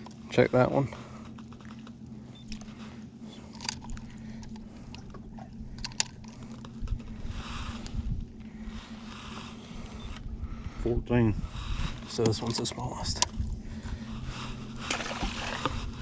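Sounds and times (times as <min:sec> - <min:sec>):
splashy rustle: 0:14.9 - 0:15.7.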